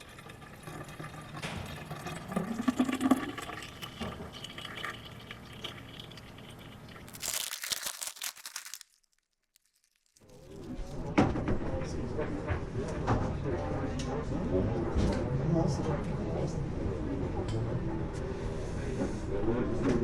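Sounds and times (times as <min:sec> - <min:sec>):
drink pouring into glass: 0:00.0 - 0:08.1.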